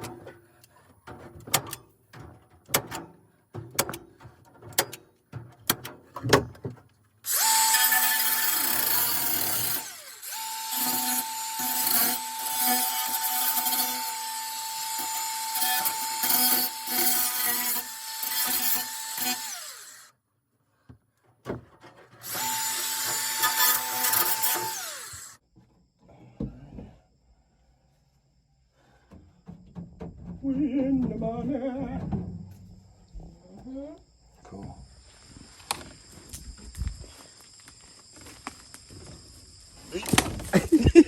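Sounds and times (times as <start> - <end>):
power drill running under load: 7.3 - 20.1, 22.2 - 25.4.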